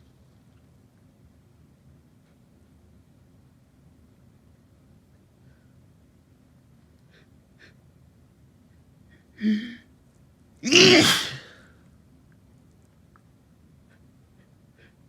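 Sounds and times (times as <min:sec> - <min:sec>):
person sneezing: 0:09.4 - 0:09.8, 0:10.6 - 0:11.6
voiced ah intake: 0:10.6 - 0:11.6.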